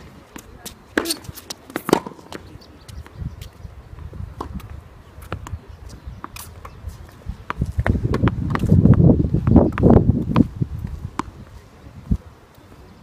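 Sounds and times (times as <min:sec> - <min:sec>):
footsteps on tennis court: 0:00.0 - 0:12.9
tennis ball hits: 0:00.9 - 0:02.4.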